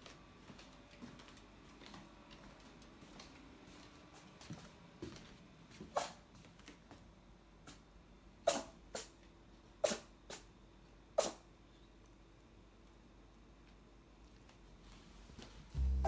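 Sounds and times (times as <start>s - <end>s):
cat sneezing: 5.9s - 6.2s, 8.4s - 9.2s, 9.8s - 10.5s, 11.1s - 11.5s.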